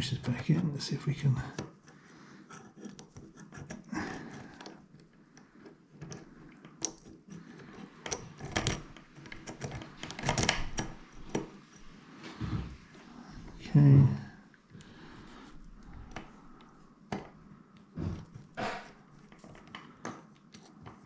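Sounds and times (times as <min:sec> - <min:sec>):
lock pick clicking and scraping: 0:01.5 - 0:11.9, 0:18.2 - 0:21.0.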